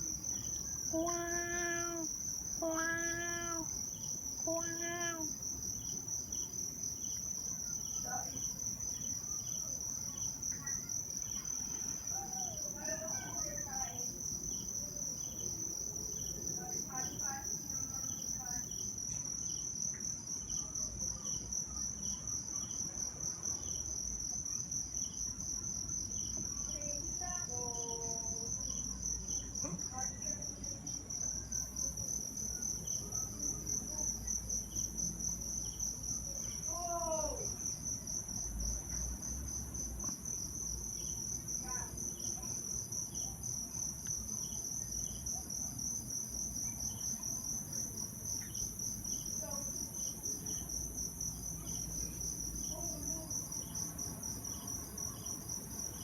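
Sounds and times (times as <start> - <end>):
insects trilling: 0.0 - 20.6
insect chirping in pips: 0.0 - 56.0.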